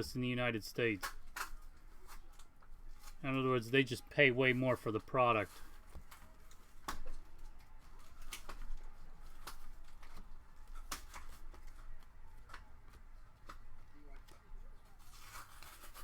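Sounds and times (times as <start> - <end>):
light rustling of cards: 0.0 - 16.0
cards clicking and snapping: 0.9 - 3.2, 5.9 - 14.4.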